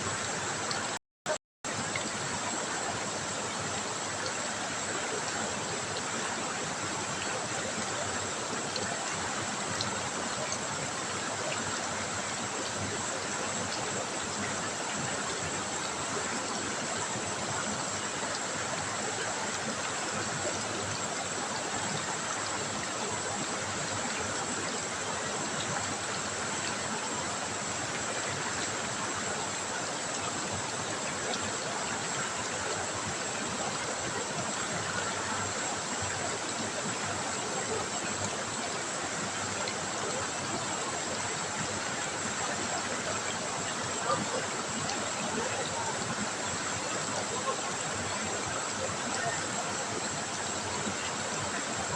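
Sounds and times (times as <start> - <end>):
river water babbling over stones: 1.7 - 51.9.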